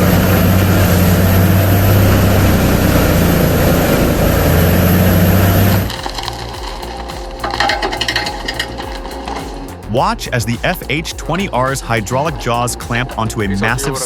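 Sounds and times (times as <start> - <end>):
wood chipper running: 0.0 - 10.0
quieter machine sound: 0.0 - 14.0.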